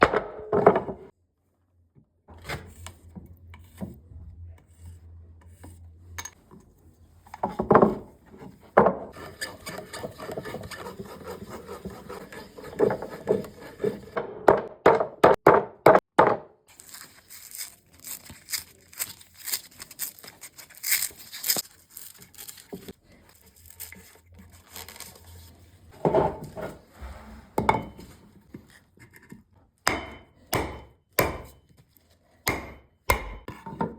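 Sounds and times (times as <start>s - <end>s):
hand saw cutting wood: 9.1s - 14.2s.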